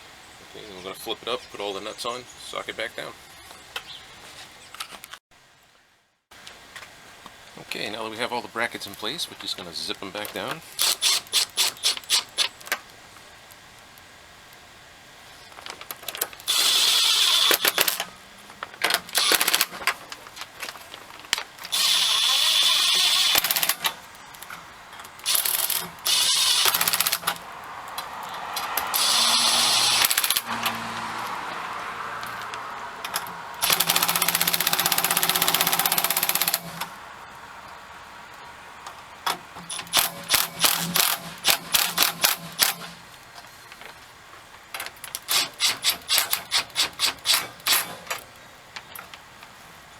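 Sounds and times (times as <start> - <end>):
power driver running nuts down: 10.2 - 12.9, 15.6 - 30.8, 32.2 - 37.0, 39.3 - 43.0.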